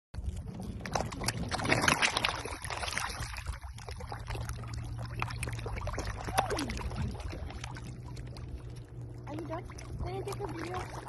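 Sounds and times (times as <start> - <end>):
boat engine low drone: 0.2 - 11.0
water splashing against hull: 0.2 - 11.0.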